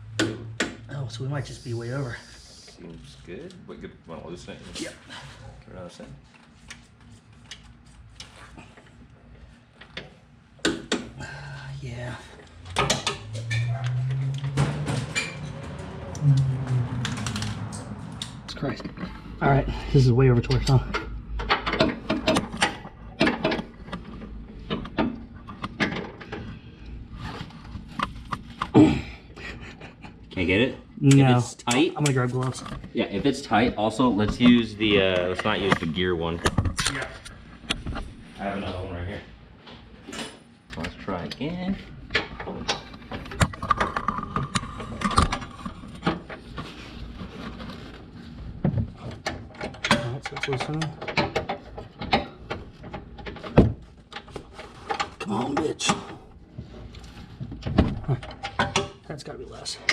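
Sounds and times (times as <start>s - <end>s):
metal clicks and knocks: 12.6s - 16.0s, 20.4s - 26.4s.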